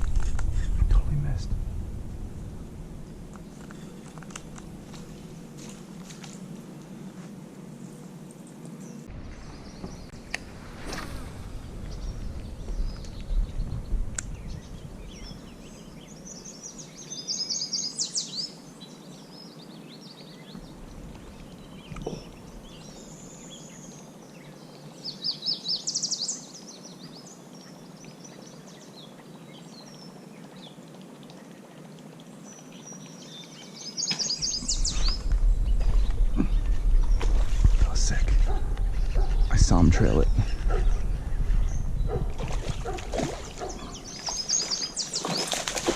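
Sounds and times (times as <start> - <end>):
low rumble: 0.0 - 5.4, 9.1 - 16.1, 34.5 - 44.1.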